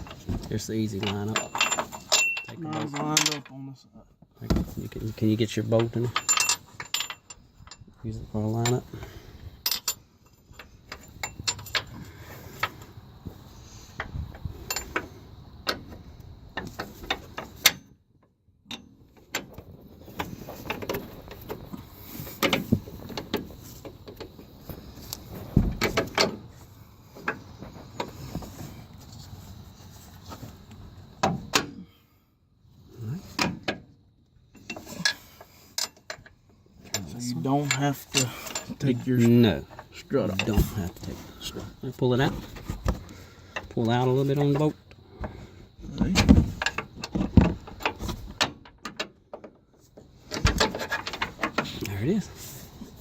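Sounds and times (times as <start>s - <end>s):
metal parts and tools clinking: 0.0s - 3.6s, 4.5s - 12.8s, 14.4s - 15.8s, 34.6s - 42.8s.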